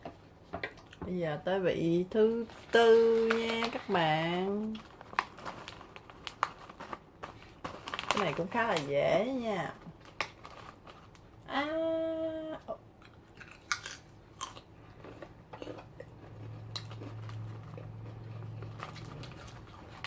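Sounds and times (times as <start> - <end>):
chewing crunchy chips: 13.0 - 20.0.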